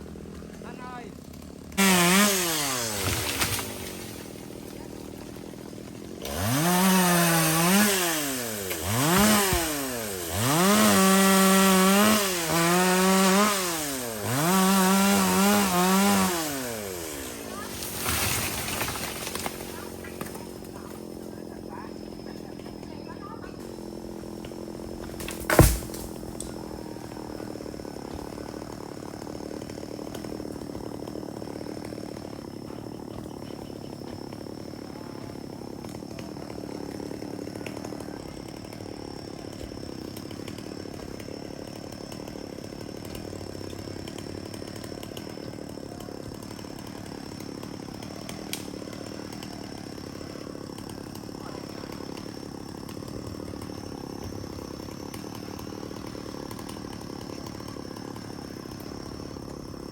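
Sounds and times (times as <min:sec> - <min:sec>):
distant chainsaw running: 0:00.0 - 0:59.9.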